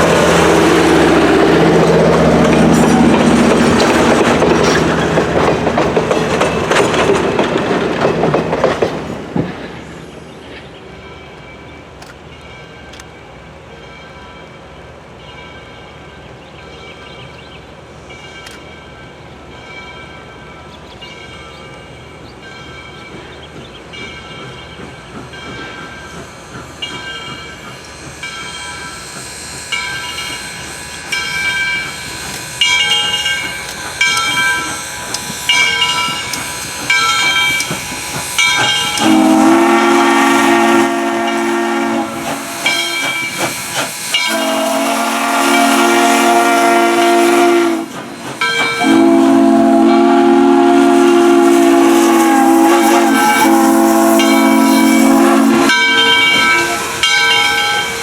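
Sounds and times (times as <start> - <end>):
steam locomotive bell ringing: 9.9 - 58.0
steam whistle blasts: 34.1 - 48.1, 48.8 - 58.0.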